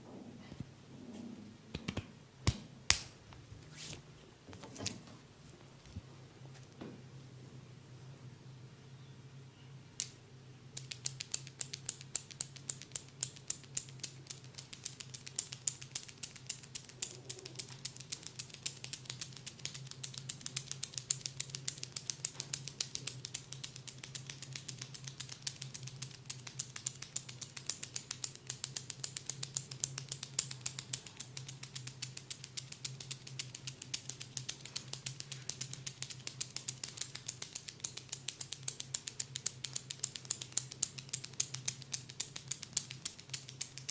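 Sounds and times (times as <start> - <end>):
massage tool tapping clicks: 10.8 - 43.9.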